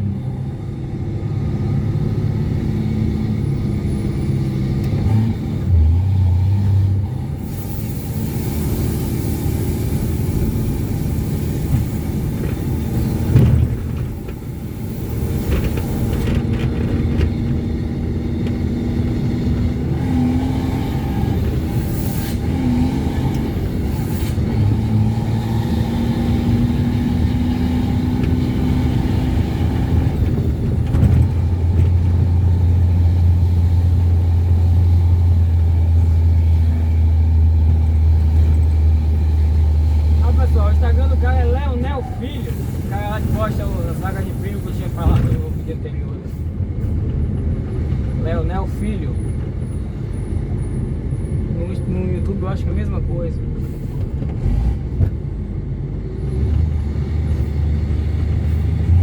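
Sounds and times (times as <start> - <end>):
truck diesel engine drone: 0.0 - 59.0.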